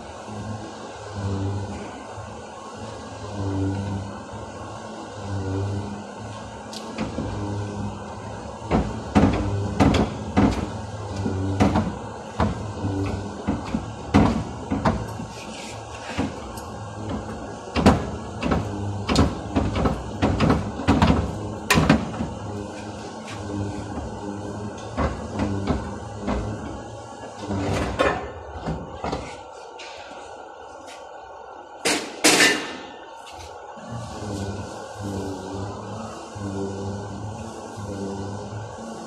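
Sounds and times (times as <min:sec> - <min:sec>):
steady low hum: 0:00.0 - 0:39.0
knocks and clanks on car bodywork: 0:08.6 - 0:24.1, 0:24.7 - 0:26.8, 0:27.4 - 0:30.0, 0:31.8 - 0:32.9.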